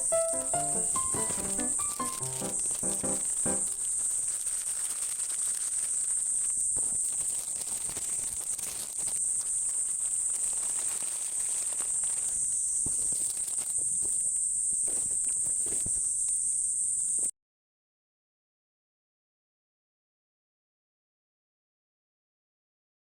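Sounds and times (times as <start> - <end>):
insects trilling: 0.0 - 4.3, 5.9 - 17.3.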